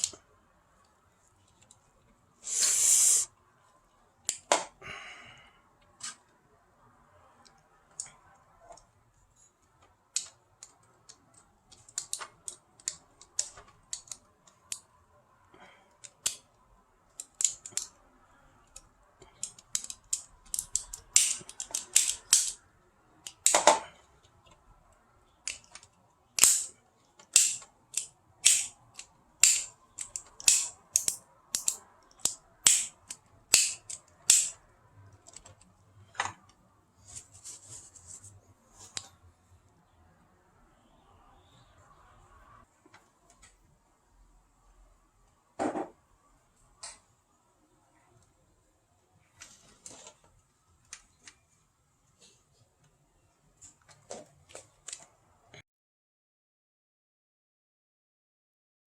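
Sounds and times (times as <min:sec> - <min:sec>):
plastic parts clicking and snapping: 0:09.6 - 0:14.9, 0:15.9 - 0:18.0, 0:18.6 - 0:22.6, 0:23.2 - 0:24.6, 0:25.4 - 0:36.6.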